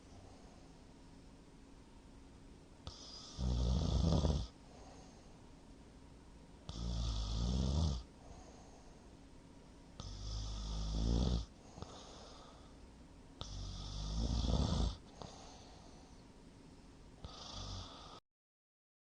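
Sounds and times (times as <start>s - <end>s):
quiet breathing: 0.0s - 1.1s, 2.8s - 5.6s, 6.6s - 9.3s, 9.9s - 18.2s
man snoring heavily: 2.9s - 4.6s, 6.7s - 8.1s, 10.0s - 12.6s, 13.4s - 15.6s, 17.2s - 18.2s.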